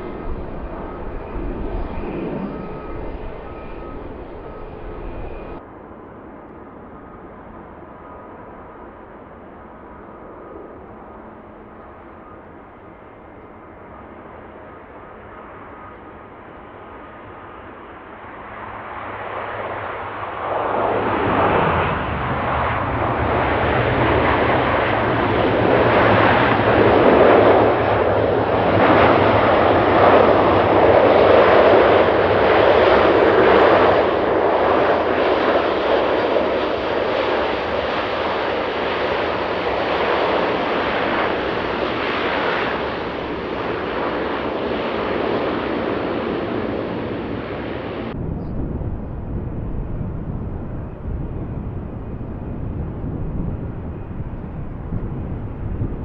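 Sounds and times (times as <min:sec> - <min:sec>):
low droning tones: 0:00.0 - 0:05.6
turboprop airliner flying past: 0:00.0 - 0:56.0.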